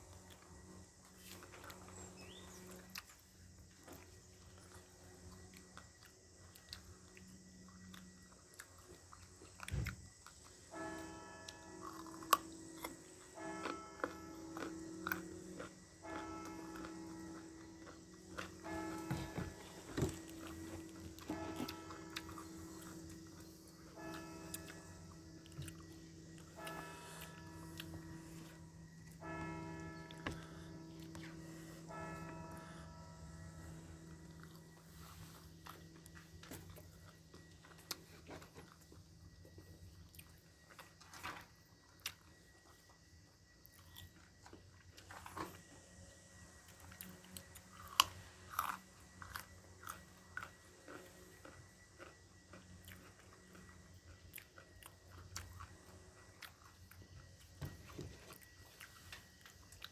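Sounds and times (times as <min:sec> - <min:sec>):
person chewing crunchy food: 0:00.0 - 0:10.8, 0:11.8 - 0:29.3, 0:34.2 - 0:43.0, 0:43.6 - 0:59.9
bell-like chimes: 0:10.7 - 0:36.2.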